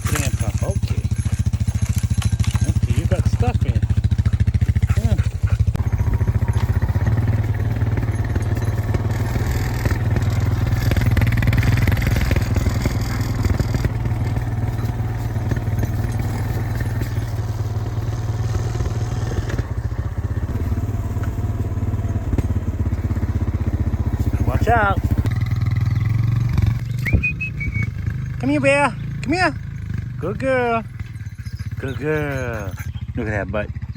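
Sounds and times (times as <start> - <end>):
small vehicle engine running: 0.0 - 33.9.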